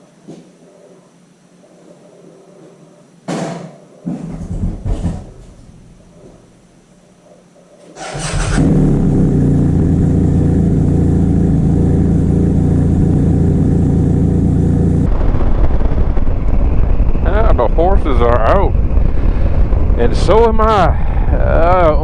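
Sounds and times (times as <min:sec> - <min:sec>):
motorcycle engine idling: 0:08.0 - 0:15.1.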